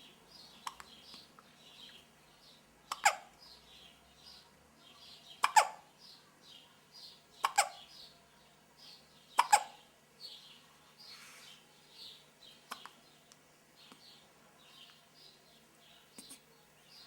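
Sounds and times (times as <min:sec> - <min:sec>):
baby hiccupping: 0:02.9 - 0:03.3, 0:05.4 - 0:05.9, 0:07.4 - 0:07.8, 0:09.4 - 0:09.8.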